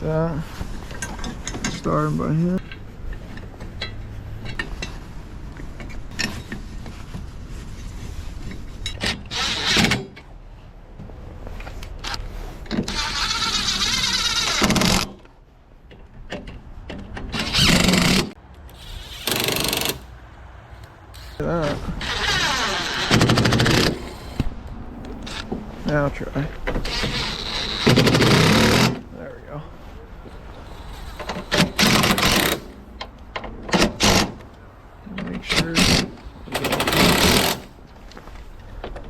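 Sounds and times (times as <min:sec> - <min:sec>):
tool and metal clicks: 0:16.3 - 0:20.2, 0:20.8 - 0:24.4, 0:30.6 - 0:34.5, 0:35.2 - 0:37.7
impact driver running: 0:17.4 - 0:20.1, 0:21.2 - 0:24.4, 0:26.9 - 0:29.0, 0:31.3 - 0:32.8, 0:35.8 - 0:37.7.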